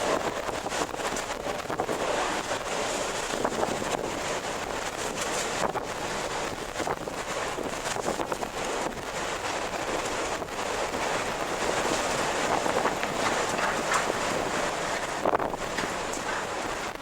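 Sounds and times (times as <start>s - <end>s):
strong wind blowing: 0.0s - 17.0s.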